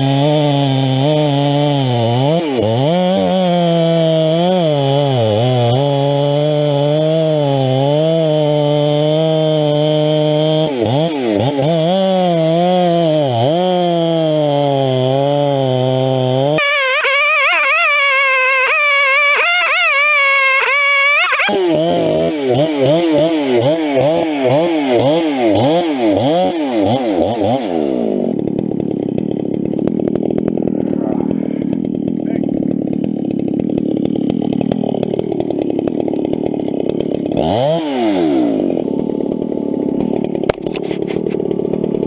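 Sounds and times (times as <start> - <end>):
chainsaw cutting wood: 0.0 - 42.0.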